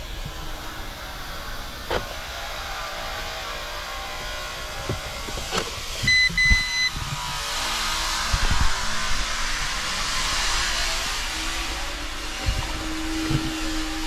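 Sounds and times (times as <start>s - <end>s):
steady hiss: 0.0s - 14.0s
short electronic beeps: 6.1s - 7.0s.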